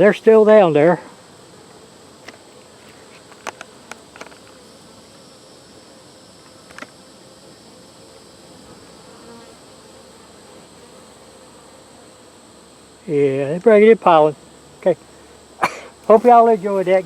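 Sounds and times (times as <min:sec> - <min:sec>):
bees buzzing: 0:00.0 - 0:17.0.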